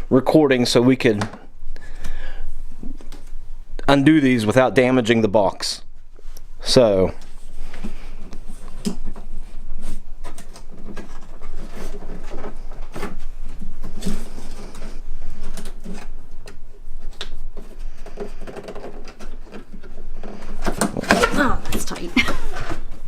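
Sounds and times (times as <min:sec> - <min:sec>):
cardboard scraping and rustling: 0:07.2 - 0:23.0.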